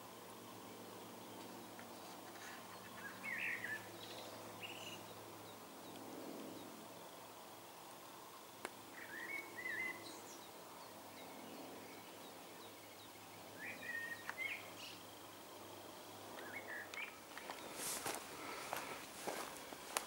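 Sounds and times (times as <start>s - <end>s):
outdoor background noise: 0.0s - 20.0s
songbird singing whistled phrases: 9.0s - 10.2s, 13.6s - 15.0s, 16.4s - 17.2s.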